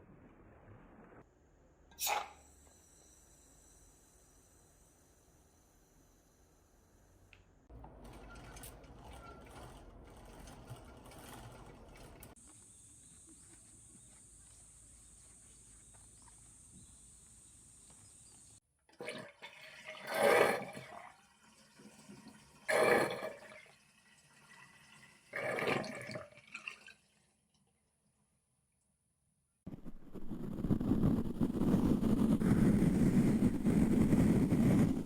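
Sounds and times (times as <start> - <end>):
faint hiss with high whine: 1.3 - 7.3.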